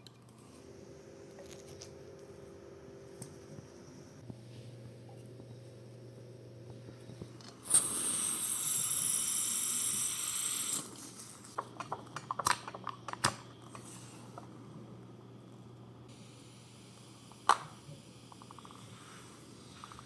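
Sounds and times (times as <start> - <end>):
pressurised spray hissing: 7.6 - 11.2.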